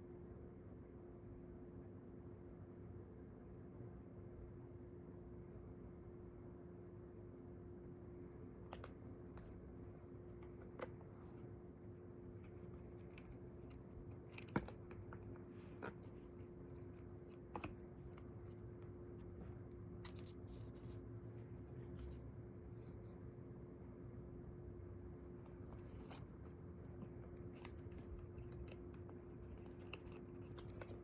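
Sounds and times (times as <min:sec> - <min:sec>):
steady low hum: 0:00.0 - 0:31.0
packaging clicks and taps: 0:12.4 - 0:16.2, 0:25.5 - 0:31.0.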